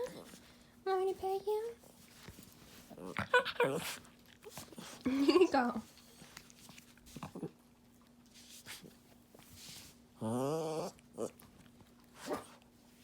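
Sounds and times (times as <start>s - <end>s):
small dog moaning grumble: 2.9s - 4.0s, 10.2s - 11.4s.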